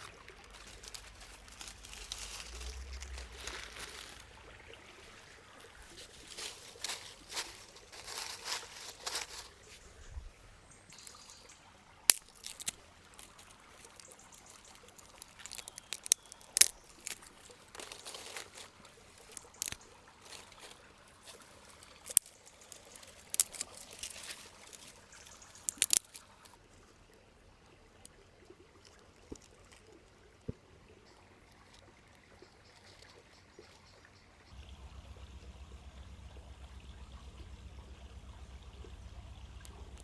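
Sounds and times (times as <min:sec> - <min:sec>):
campfire crackling and popping: 0:12.1 - 0:26.5.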